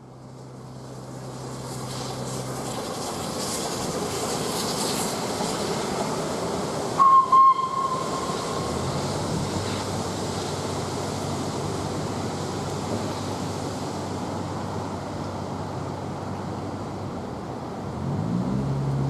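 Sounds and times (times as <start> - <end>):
steam train rumbling past: 0.2 - 16.2
steam locomotive whistle blasts: 7.0 - 8.7.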